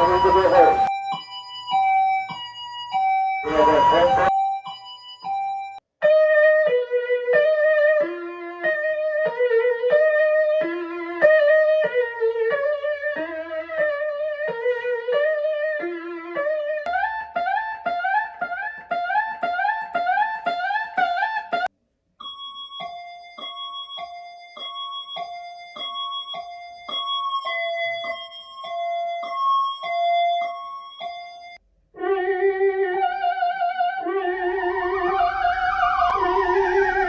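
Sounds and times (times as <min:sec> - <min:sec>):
ambulance sirens: 0:00.0 - 0:05.8, 0:22.3 - 0:31.6, 0:34.1 - 0:37.0.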